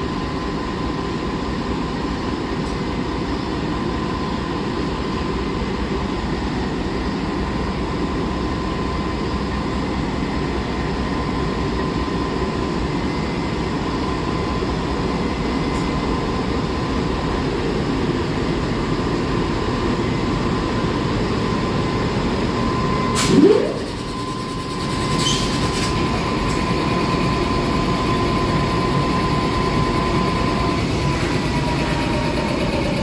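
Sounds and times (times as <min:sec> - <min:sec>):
train rumbling on rails: 0:00.0 - 0:33.0
thin steady whine: 0:05.0 - 0:33.0
short rising whine: 0:21.5 - 0:33.0.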